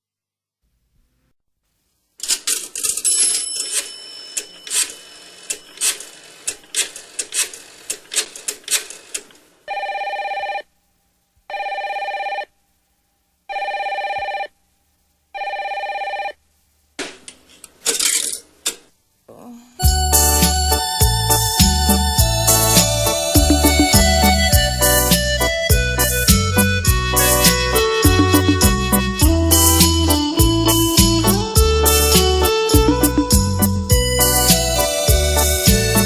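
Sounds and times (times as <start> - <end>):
telephone ringing: 2.8 - 7.8, 9.7 - 10.7, 11.5 - 12.5, 13.5 - 14.5, 15.4 - 16.4.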